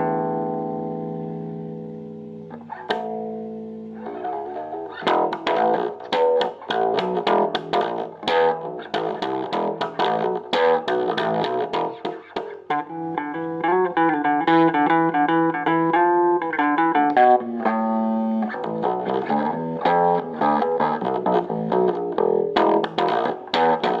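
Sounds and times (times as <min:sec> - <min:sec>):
distorted electric bass notes: 0:04.6 - 0:12.2.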